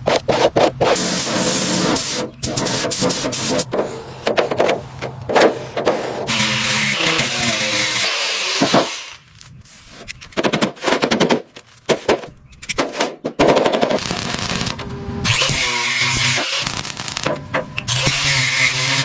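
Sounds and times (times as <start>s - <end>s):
air tool rattling impacts: 0.8s - 6.4s.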